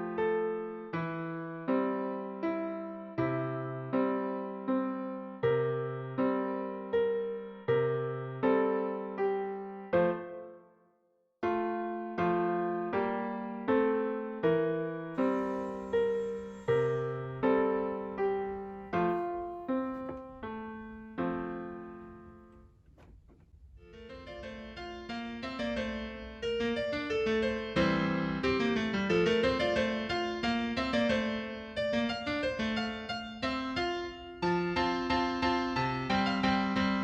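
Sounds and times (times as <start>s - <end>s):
piano music: 11.5s - 22.8s, 23.8s - 37.0s.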